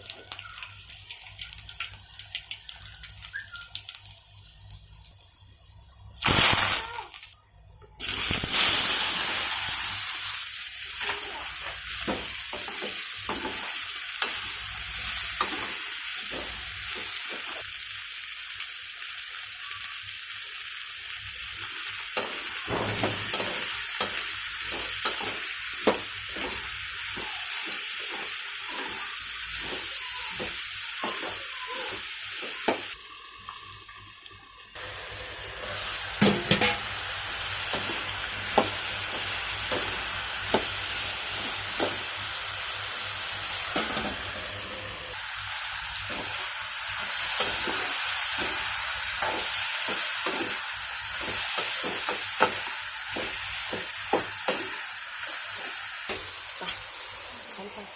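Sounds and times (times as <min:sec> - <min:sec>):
vegetables sizzling in oil: 0:00.0 - 0:07.3, 0:07.9 - 0:57.9.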